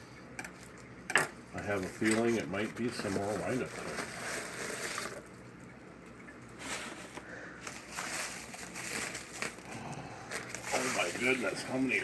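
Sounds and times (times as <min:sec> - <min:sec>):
packaging rustling and crackling: 0:01.8 - 0:05.4, 0:06.6 - 0:12.0.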